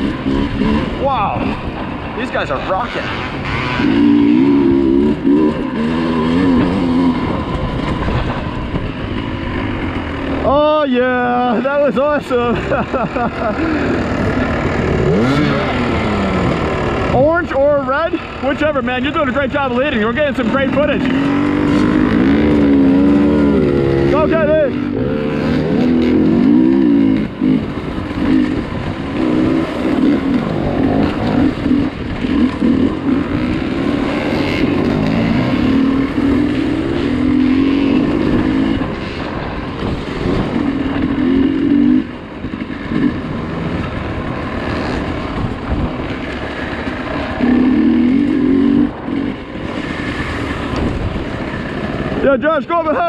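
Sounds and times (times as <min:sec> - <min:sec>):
dirt bike engine revving: 0:00.0 - 0:53.0
wind rush: 0:48.8 - 0:52.2.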